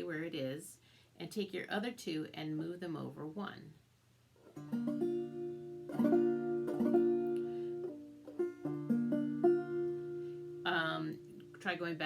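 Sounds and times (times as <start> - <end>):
banjo chords brushed: 4.6 - 11.6.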